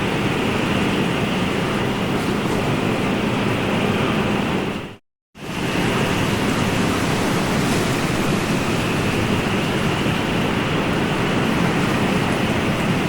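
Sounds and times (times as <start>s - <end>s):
ocean surf rushing: 5.4s - 13.0s.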